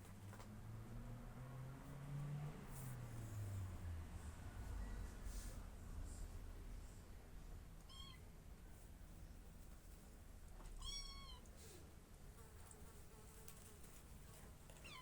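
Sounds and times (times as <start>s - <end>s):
cat meowing faintly: 7.8s - 8.3s, 10.6s - 11.8s, 14.8s - 15.0s.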